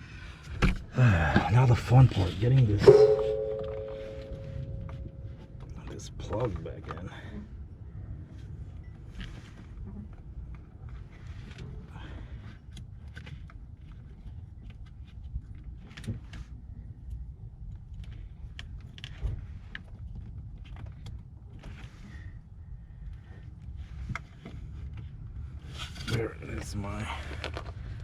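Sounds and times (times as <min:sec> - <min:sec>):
steady low rumble: 0:00.0 - 0:15.7.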